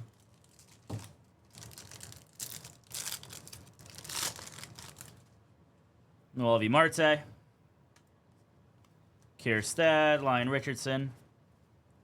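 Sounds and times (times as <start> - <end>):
wrapper crinkling and tearing: 0.1 - 5.4.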